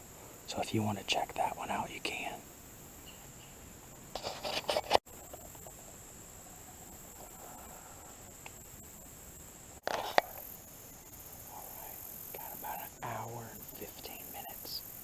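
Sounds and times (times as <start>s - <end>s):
insects chirring: 0.0s - 15.0s
rustling: 3.0s - 7.7s.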